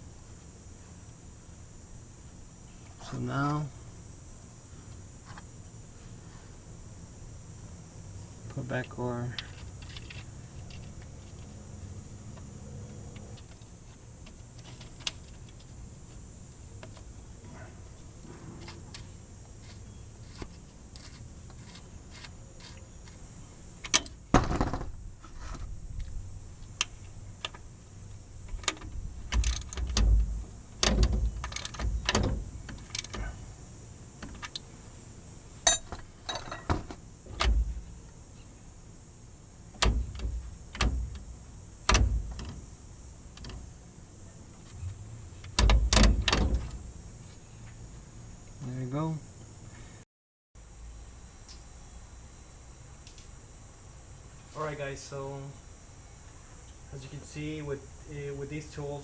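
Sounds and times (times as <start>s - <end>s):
metal tools clinking and knocking: 35.7s - 36.9s.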